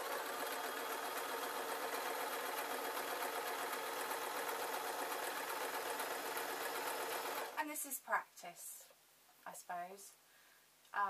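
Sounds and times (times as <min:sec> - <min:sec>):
sewing machine stitching: 0:00.0 - 0:07.6.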